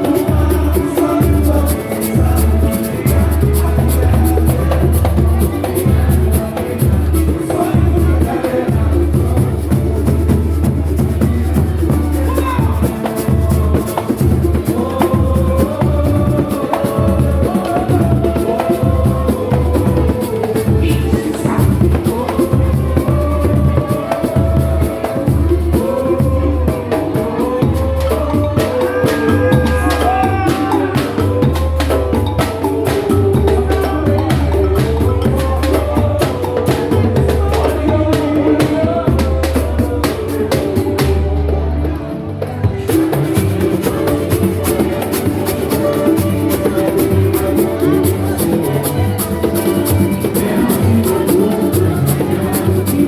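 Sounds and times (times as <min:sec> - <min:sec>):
pulsing bass beat: 0:00.0 - 0:41.8
hand percussion: 0:00.0 - 0:53.0
person singing: 0:00.0 - 0:53.0.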